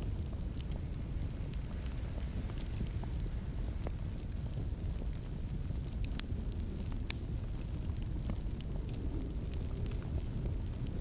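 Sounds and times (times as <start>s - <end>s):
wood fire crackling: 0.0s - 11.0s.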